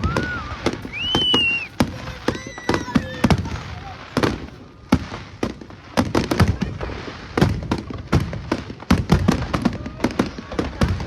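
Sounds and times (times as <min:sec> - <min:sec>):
fireworks bangs and pops: 0:00.0 - 0:11.0.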